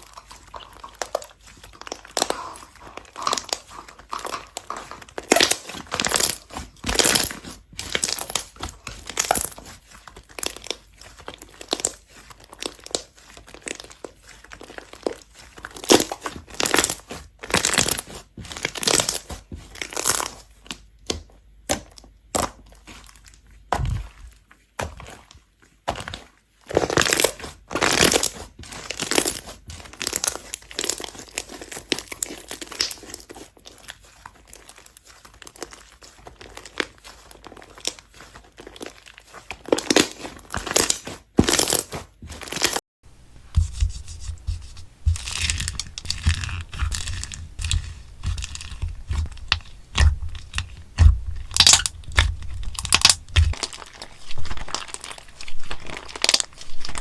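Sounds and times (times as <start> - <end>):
slime crackling and popping: 0.0 - 20.4, 26.0 - 42.8, 44.9 - 57.0
deep soft thumps: 43.2 - 53.6.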